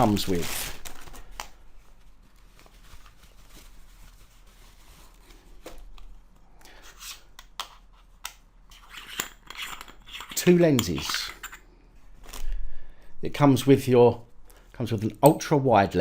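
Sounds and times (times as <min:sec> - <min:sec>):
packaging rustling: 0:00.0 - 0:06.3.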